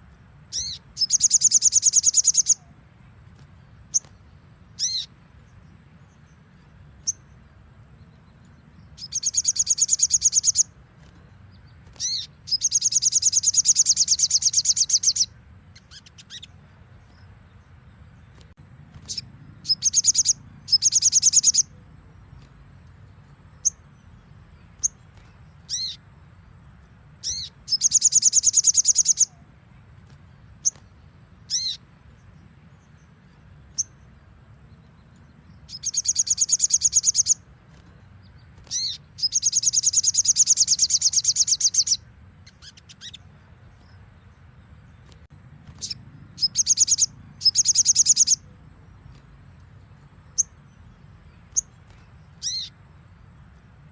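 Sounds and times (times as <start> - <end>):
songbird high trilled bursts: 0.5 - 2.7, 9.0 - 10.7, 12.0 - 16.5, 19.0 - 21.8, 27.2 - 29.4, 35.7 - 37.5, 38.7 - 43.2, 45.8 - 48.5, 52.4 - 52.8.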